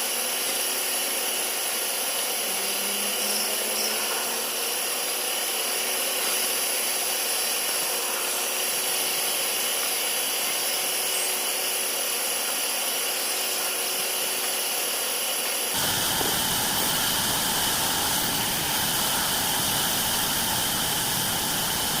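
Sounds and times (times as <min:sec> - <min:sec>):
band saw cutting wood: 0:15.7 - 0:22.0.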